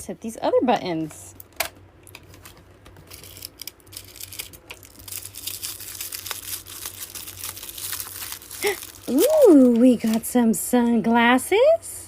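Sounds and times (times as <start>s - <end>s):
plastic wrap crinkling: 2.1s - 10.4s.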